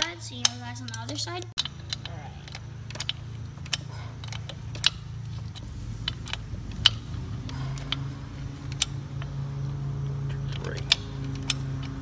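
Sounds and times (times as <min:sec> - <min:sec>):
steady low hum: 0:00.0 - 0:12.0
metallic clicks of hand tools: 0:00.4 - 0:08.1.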